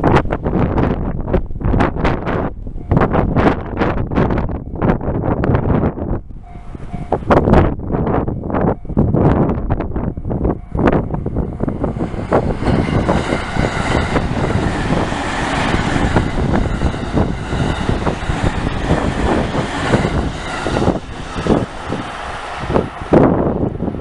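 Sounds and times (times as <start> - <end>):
level crossing warning bell: 6.4 - 7.4, 10.0 - 11.9
train wheels rattling on rails: 6.4 - 24.0.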